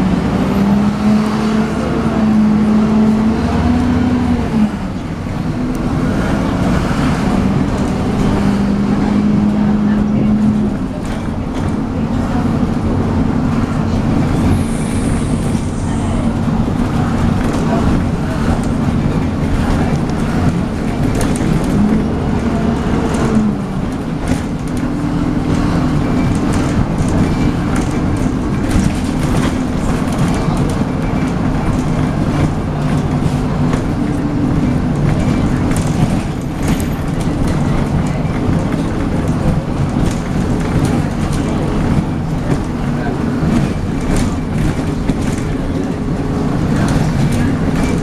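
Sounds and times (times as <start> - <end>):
bus engine whining: 0.0 - 48.0
rattles and clicks: 15.1 - 48.0.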